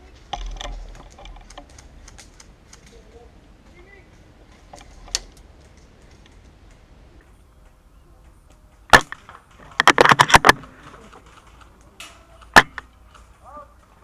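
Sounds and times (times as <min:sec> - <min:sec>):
airsoft rifle shot: 0:08.9 - 0:09.2.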